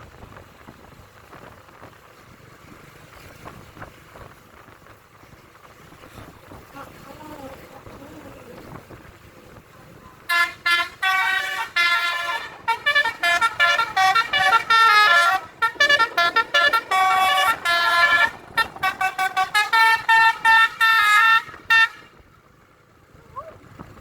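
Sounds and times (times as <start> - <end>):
multi-tone bus air horn tune: 10.2 - 22.3.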